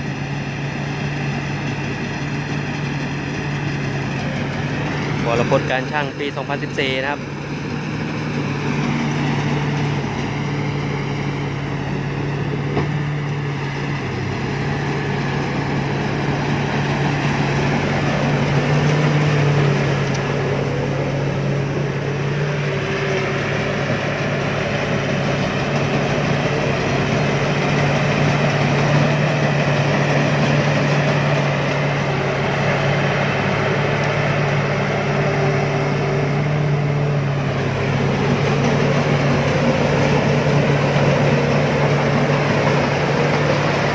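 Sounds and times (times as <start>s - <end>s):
harvester engine hum: 0.0s - 43.9s
machinery clatter: 22.6s - 43.9s.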